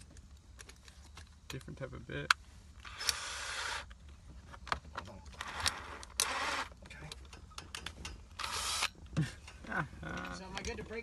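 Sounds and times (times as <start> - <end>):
power drill bursts: 2.9 - 3.9, 5.4 - 6.7, 8.4 - 8.9
handling clicks and knocks: 4.0 - 8.4.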